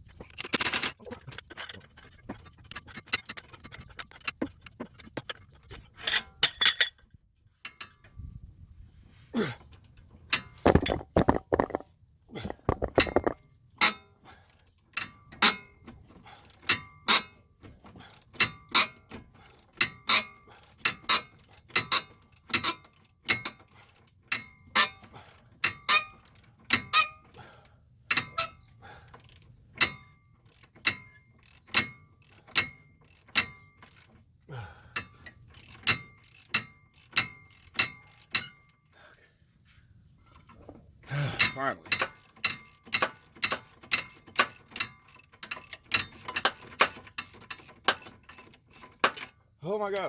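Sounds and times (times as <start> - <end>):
ratchet wrench clicking: 35.6 - 38.4, 42.0 - 49.2.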